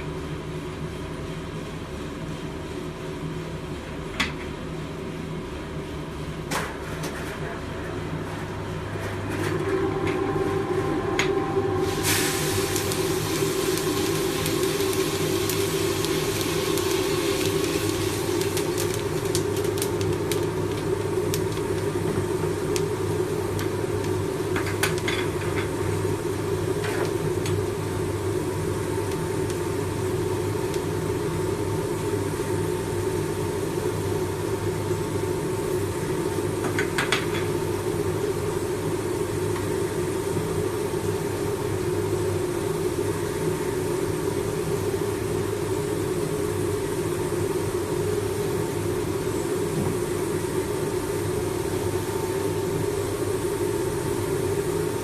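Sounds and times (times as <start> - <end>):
coffee roasting machine humming: 0.0 - 55.0
faint whine: 9.0 - 19.6.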